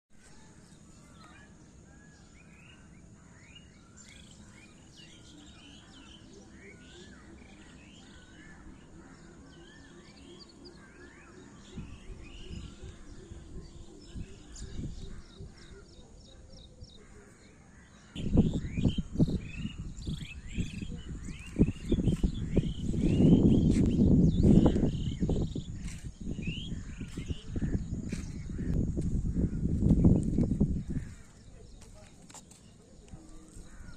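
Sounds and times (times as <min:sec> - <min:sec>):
birds chirping and calling: 0:00.2 - 0:33.9
wind buffeting microphone: 0:11.6 - 0:17.1, 0:18.1 - 0:32.3.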